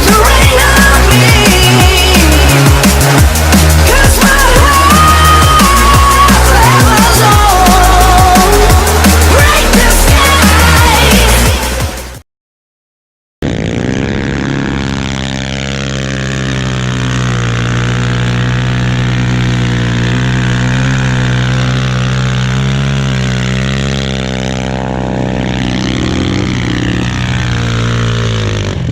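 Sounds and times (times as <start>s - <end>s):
quad bike engine idling: 0.0s - 12.1s, 13.4s - 28.9s.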